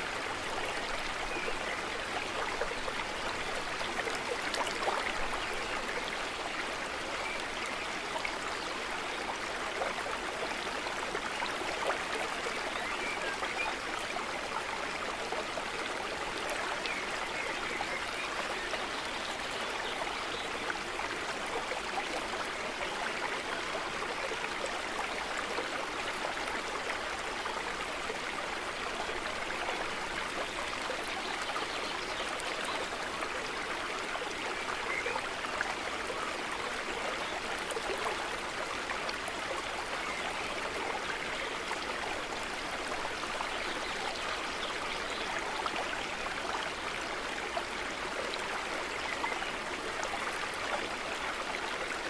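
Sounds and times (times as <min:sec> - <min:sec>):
stream of running water: 0:00.0 - 0:52.0.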